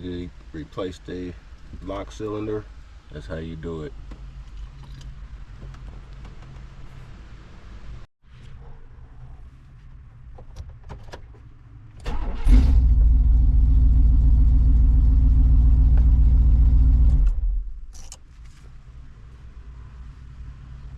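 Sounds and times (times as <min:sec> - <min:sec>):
car engine running: 0:12.6 - 0:17.7.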